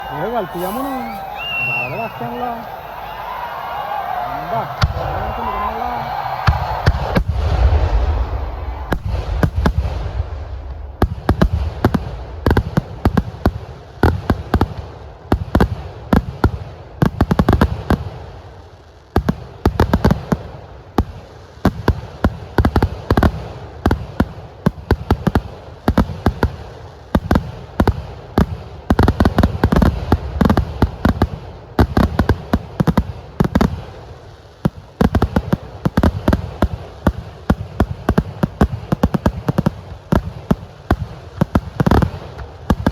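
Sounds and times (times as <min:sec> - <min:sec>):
firecracker bangs: 0:00.0 - 0:18.2.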